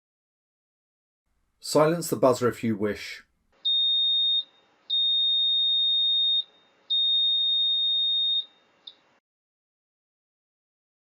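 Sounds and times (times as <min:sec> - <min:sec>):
fire alarm panel buzzer pulsing: 0:03.6 - 0:09.0.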